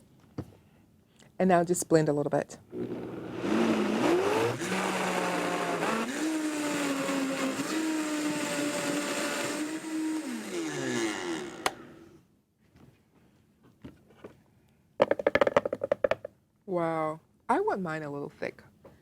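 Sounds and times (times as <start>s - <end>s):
blender motor running: 2.7s - 12.1s.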